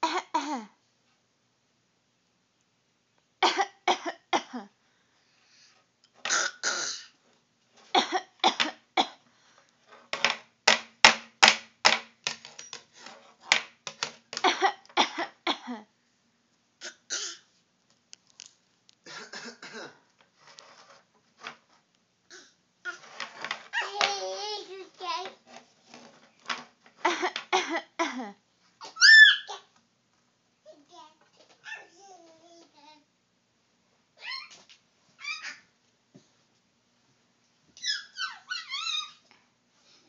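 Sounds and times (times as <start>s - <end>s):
person coughing: 0.0s - 0.8s, 3.4s - 4.7s, 8.0s - 9.2s, 19.1s - 20.1s.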